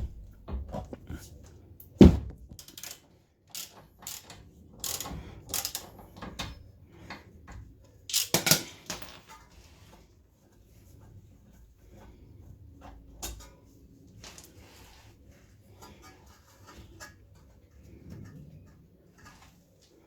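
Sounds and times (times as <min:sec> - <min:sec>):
ratchet clicking on metal: 0:02.6 - 0:06.1, 0:08.1 - 0:08.7.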